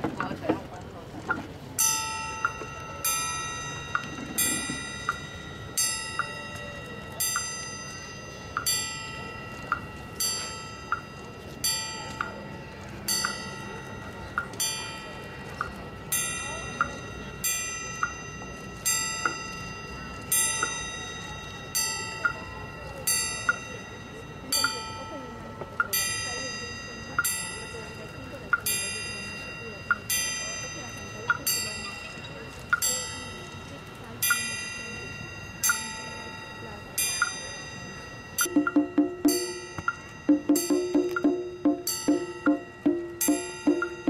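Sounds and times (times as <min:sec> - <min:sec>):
bell-like metallic strikes: 0:01.8 - 0:44.0.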